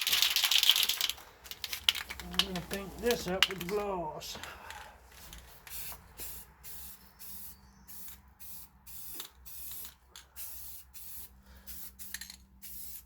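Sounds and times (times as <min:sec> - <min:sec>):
spray paint hissing bursts: 0:05.6 - 0:13.0.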